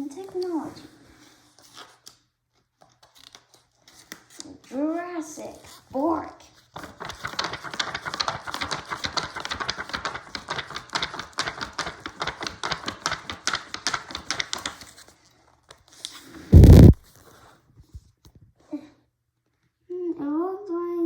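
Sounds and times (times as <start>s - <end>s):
loud low thump: 16.6s - 17.0s
scratchy clicks: 16.6s - 17.0s.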